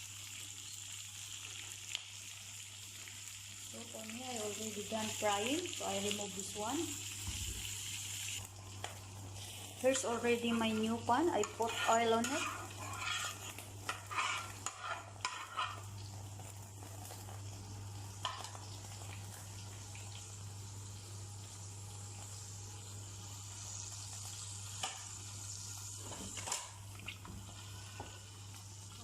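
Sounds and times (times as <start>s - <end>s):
oil sizzling in a frying pan: 0.0s - 29.0s
pan and utensils clattering: 10.4s - 15.9s.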